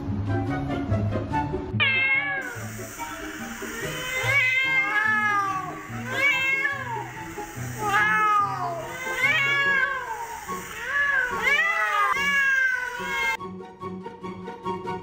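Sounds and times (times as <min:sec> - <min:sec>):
quiet background music: 0:00.0 - 0:15.0
cat meowing: 0:01.8 - 0:02.7, 0:03.6 - 0:13.4.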